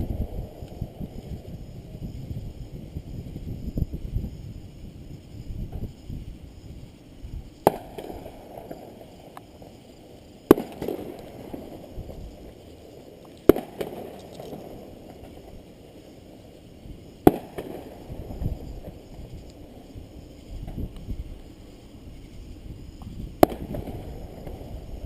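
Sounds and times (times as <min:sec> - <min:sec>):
fireworks bursting: 0:06.9 - 0:21.8, 0:23.0 - 0:25.0.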